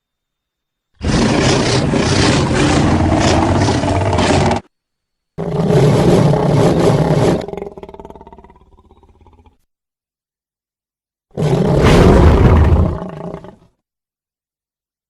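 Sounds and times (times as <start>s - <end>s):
dinosaur roar: 1.0s - 4.7s, 5.4s - 9.6s, 11.4s - 13.7s.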